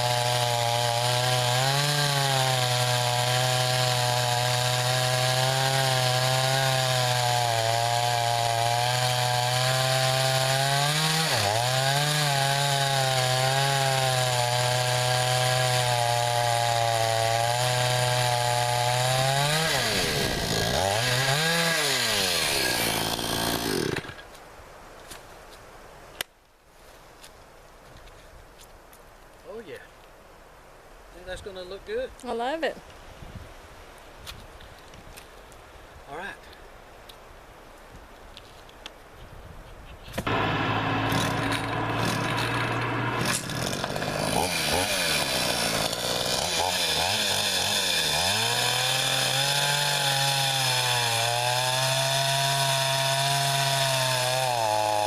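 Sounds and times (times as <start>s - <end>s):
chainsaw cutting log: 0.0s - 24.3s, 40.2s - 55.0s.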